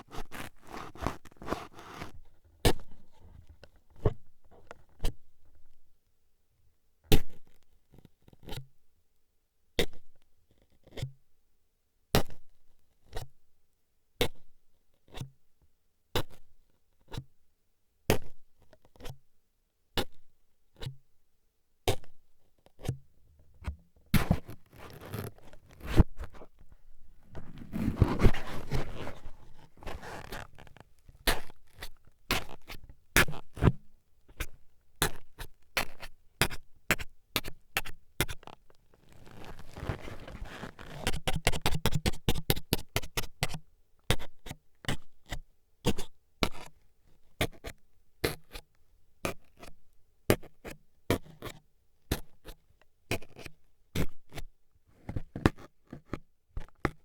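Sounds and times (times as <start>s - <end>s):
scratching and rustling: 23.6s - 31.8s, 39.0s - 41.0s.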